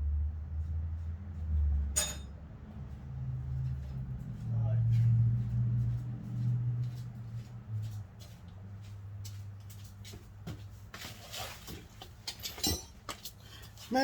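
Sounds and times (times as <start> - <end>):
metal tools clicking and clinking: 2.0 - 2.3, 12.0 - 13.3.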